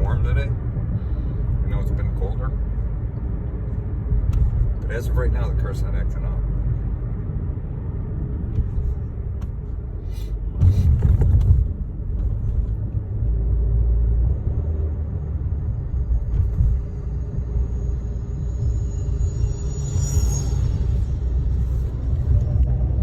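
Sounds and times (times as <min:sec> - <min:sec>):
car engine and road rumble: 0:00.0 - 0:23.0.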